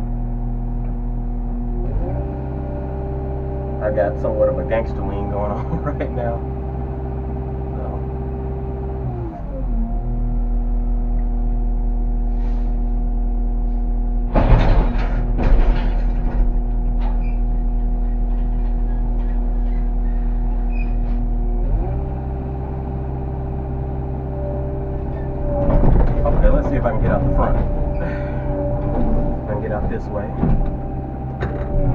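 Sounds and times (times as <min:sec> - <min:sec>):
excavator diesel engine revving: 0:00.0 - 0:31.9
loud metal clanking: 0:14.3 - 0:20.7, 0:22.3 - 0:31.9.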